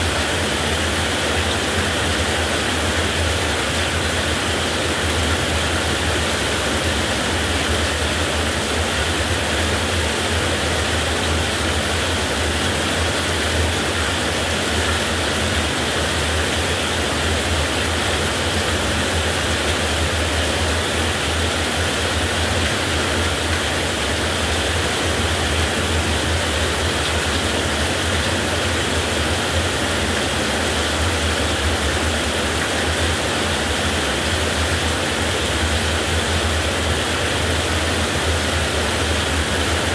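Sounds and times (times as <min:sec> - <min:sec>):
heavy rain hiss: 0:00.0 - 0:39.9.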